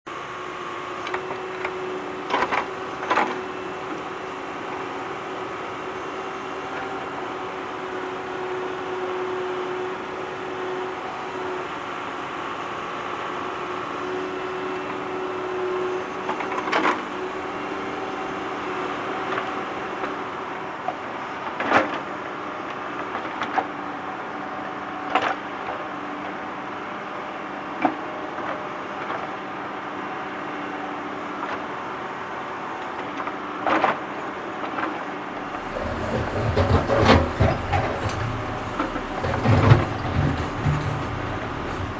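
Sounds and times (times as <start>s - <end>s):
diesel engine running: 35.6s - 41.9s.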